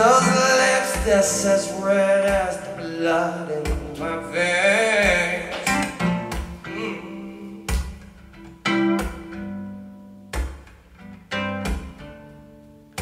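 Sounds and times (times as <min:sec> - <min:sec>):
guitar and bass playing: 0:00.0 - 0:13.0
sharp percussive hits: 0:05.0 - 0:06.7.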